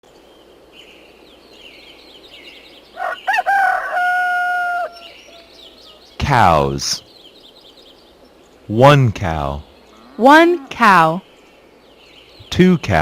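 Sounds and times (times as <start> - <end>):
small birds chirping: 0.1 - 13.0
rooster crowing: 3.0 - 5.6.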